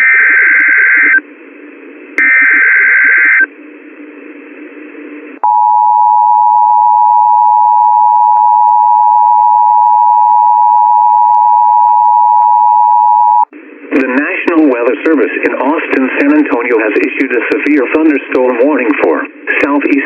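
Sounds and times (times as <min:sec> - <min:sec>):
coded data header bursts: 0:02.2 - 0:03.5
steady warning alarm tone: 0:02.2 - 0:03.5.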